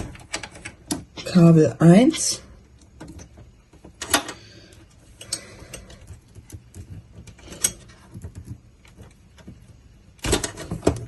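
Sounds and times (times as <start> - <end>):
cable connectors clicking and rattling: 0.0 - 1.3.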